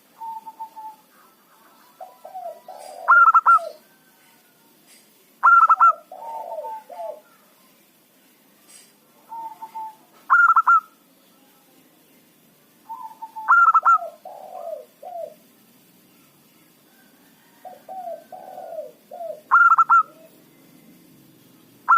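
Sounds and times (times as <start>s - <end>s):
dove cooing: 0.0s - 4.5s, 5.4s - 7.4s, 9.2s - 11.0s, 12.9s - 15.4s, 16.9s - 20.4s.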